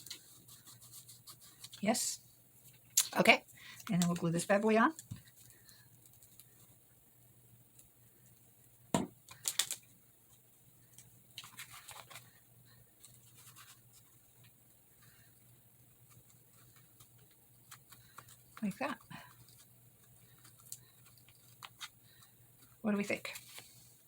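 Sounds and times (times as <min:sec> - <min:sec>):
paper rustling and rubbing: 0:00.0 - 0:02.0, 0:09.4 - 0:24.0.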